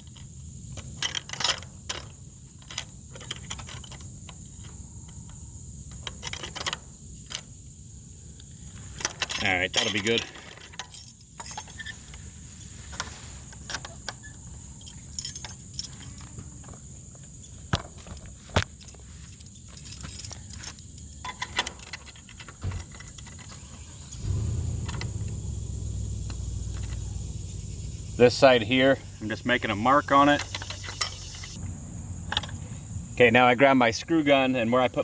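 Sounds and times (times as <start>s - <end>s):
metal latch clinking and rattling: 0.0s - 7.7s, 8.6s - 12.3s, 12.9s - 25.5s, 26.2s - 27.3s, 28.2s - 31.6s, 32.2s - 32.7s
steady low rumble: 24.0s - 30.0s.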